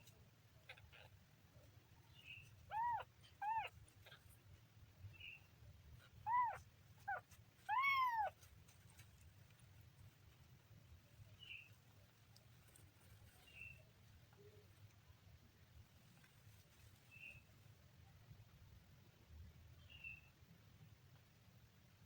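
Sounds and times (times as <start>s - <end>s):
kitten mewing: 2.6s - 4.2s, 6.1s - 8.4s.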